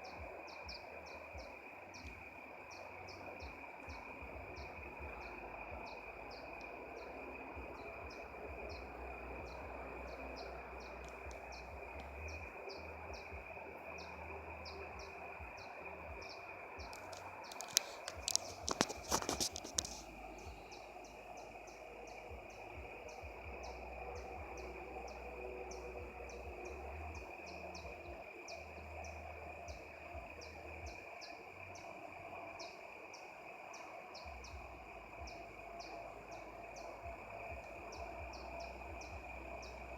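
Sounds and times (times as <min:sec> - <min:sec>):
steady high drone: 0:00.0 - 0:39.9
sharp clicks and rustles: 0:16.9 - 0:20.6.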